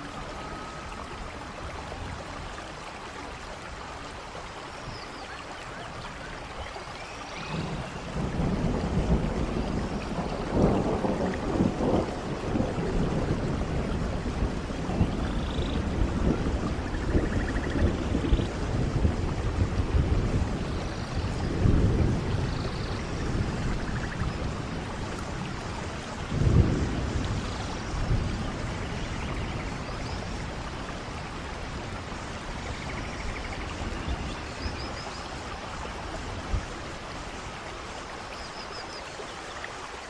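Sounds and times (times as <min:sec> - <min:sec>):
steady rain: 0:00.0 - 0:40.0
low rolls of thunder: 0:07.3 - 0:38.2.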